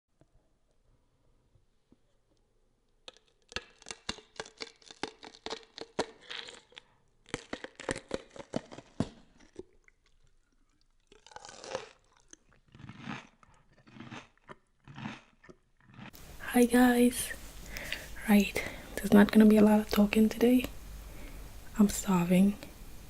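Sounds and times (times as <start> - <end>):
crunching and crackling seafood: 2.9 - 16.2
chewing noise: 3.1 - 16.2.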